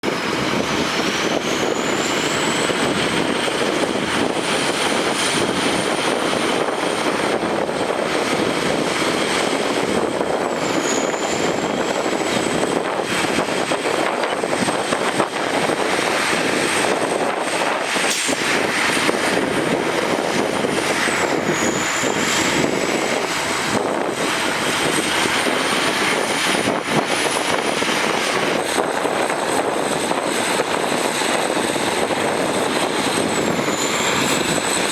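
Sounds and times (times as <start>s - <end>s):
diesel machinery running: 0.0s - 34.9s
thin high whine: 10.4s - 11.9s, 20.9s - 22.9s.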